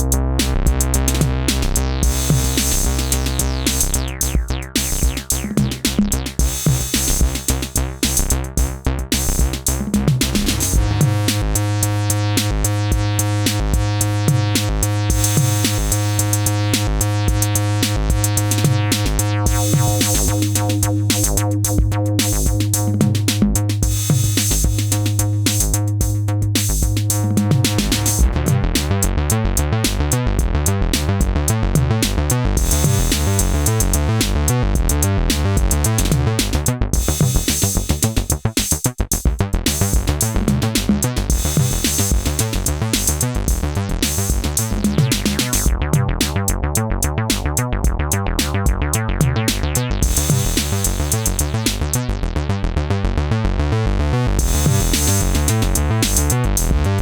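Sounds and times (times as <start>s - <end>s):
drum machine beat: 0.0s - 52.0s, 54.4s - 57.0s
synthesizer bass line: 0.0s - 57.0s.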